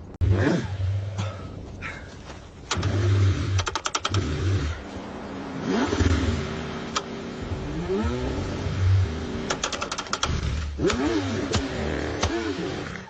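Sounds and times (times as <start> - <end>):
car engine cranking: 2.6 - 13.0
sharp clicks: 3.5 - 4.3, 6.9 - 7.1, 9.4 - 12.4.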